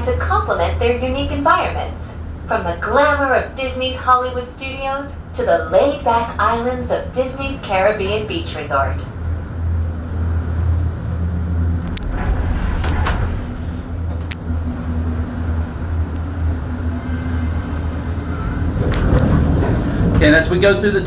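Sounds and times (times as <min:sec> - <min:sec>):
gondola cabin humming: 0:00.0 - 0:21.0.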